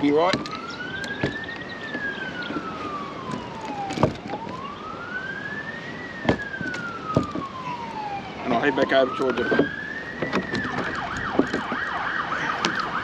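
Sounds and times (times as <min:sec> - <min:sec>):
emergency siren wailing: 0:00.0 - 0:13.0
sharp knocks: 0:06.2 - 0:07.5.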